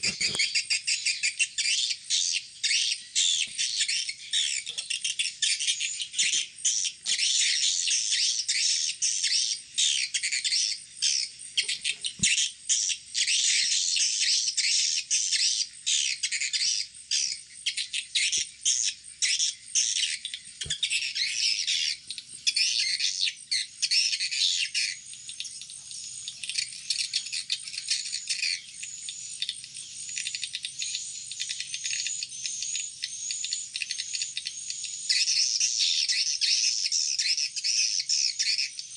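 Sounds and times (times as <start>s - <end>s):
recorded swiftlet chirps: 0.0s - 1.3s.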